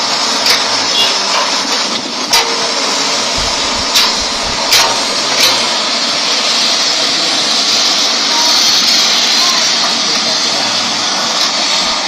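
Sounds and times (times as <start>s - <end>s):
excavator running with hiss: 0.0s - 12.0s
sharp metal clanks: 2.3s - 6.0s
low thump: 3.4s - 5.0s.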